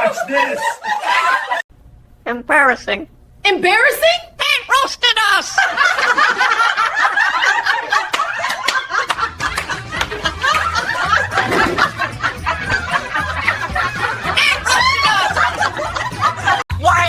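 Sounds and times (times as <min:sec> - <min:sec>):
people laughing: 0:00.0 - 0:01.6, 0:05.3 - 0:16.7
low music beat: 0:09.0 - 0:17.0.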